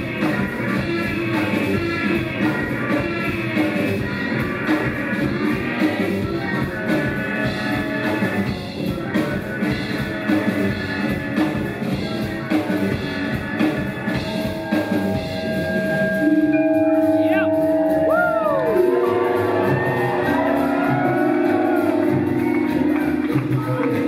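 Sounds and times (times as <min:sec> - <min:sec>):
drum kit beat: 0:00.0 - 0:24.0
live rock band playing: 0:00.0 - 0:24.0.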